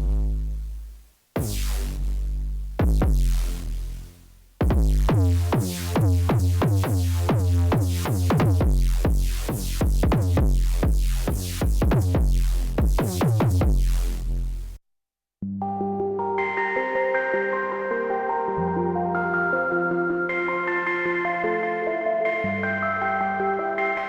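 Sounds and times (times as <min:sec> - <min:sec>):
deep sustained synth bass: 0:00.0 - 0:14.8
plucky synthesizer notes: 0:15.5 - 0:24.0.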